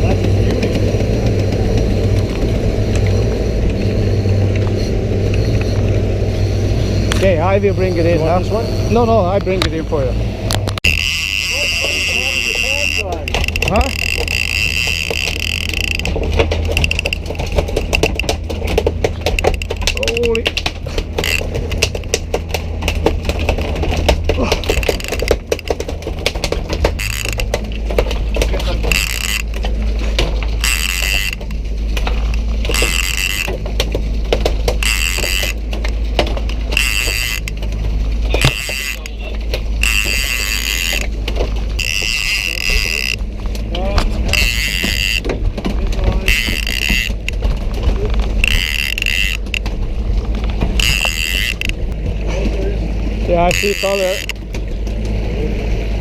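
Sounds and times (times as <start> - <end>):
boat engine running: 0.0 - 56.0
fishing reel cranking: 2.8 - 22.2, 23.6 - 27.8, 28.6 - 34.0, 34.7 - 36.0, 36.6 - 37.7, 38.3 - 45.3, 46.2 - 49.9, 50.6 - 52.0, 53.3 - 54.4
rapid clicks and knocks: 10.5 - 52.6, 53.5 - 55.2.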